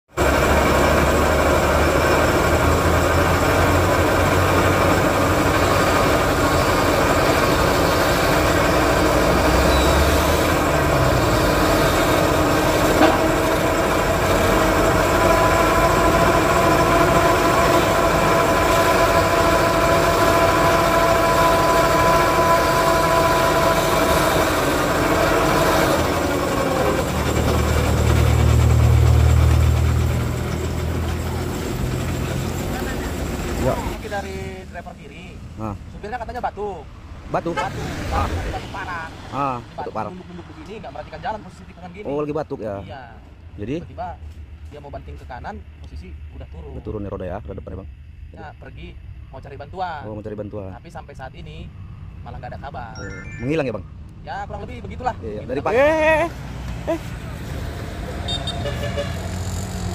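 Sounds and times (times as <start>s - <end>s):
truck engine running: 0.1s - 37.7s.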